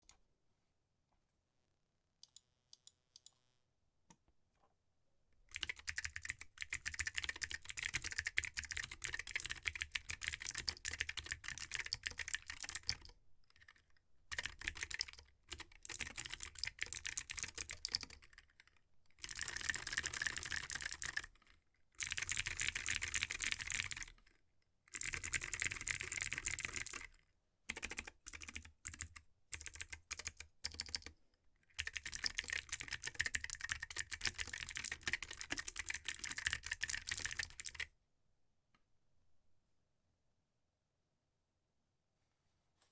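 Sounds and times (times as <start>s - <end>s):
mechanical keyboard typing: 5.5s - 18.6s, 19.2s - 21.4s, 22.0s - 24.2s, 25.0s - 27.1s, 27.7s - 31.1s, 31.8s - 37.9s.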